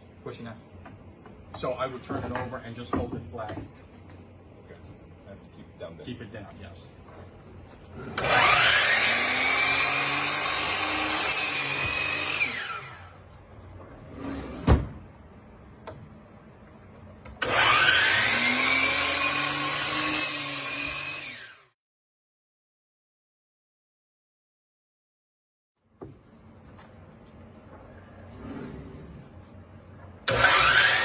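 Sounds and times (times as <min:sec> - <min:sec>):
woodworking jointer whining: 0:08.1 - 0:13.2, 0:17.4 - 0:21.6, 0:30.2 - 0:31.0.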